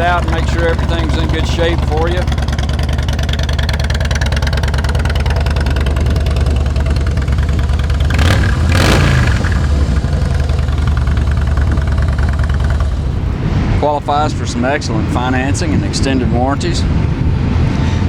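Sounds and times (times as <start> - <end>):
motorcycle engine idling: 0.0 - 14.2.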